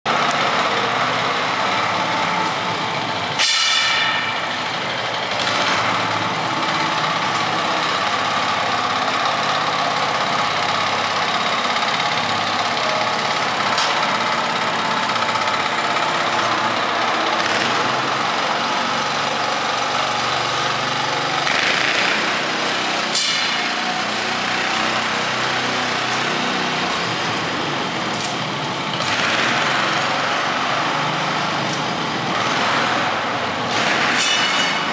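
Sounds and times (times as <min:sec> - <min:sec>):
ringing metallic clank: 0:03.4 - 0:04.6, 0:34.2 - 0:34.9.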